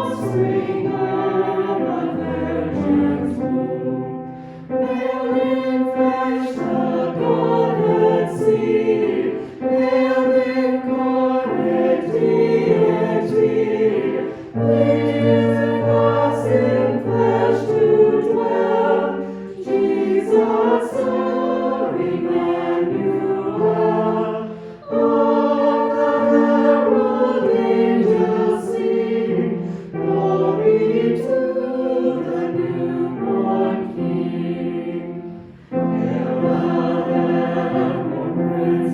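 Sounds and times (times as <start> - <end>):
choir singing a hymn: 0.0 - 38.9
singers breathing: 4.2 - 4.8, 9.3 - 9.7, 14.2 - 14.6, 19.2 - 19.6, 24.4 - 24.8, 29.6 - 30.0, 35.3 - 35.9.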